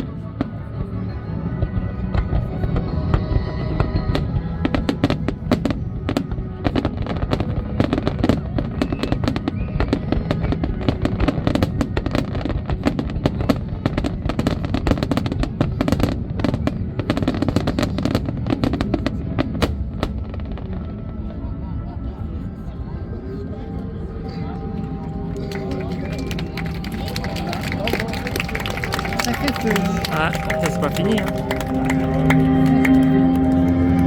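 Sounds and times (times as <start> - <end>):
fireworks bangs and crackles: 1.5 - 21.1, 25.3 - 34.0
music playing: 13.9 - 34.0.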